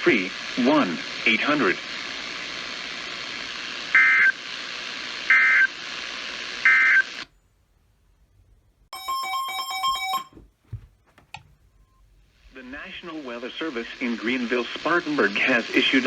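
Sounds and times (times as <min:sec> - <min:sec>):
radio receiver hiss: 0:00.0 - 0:07.3, 0:11.7 - 0:16.0.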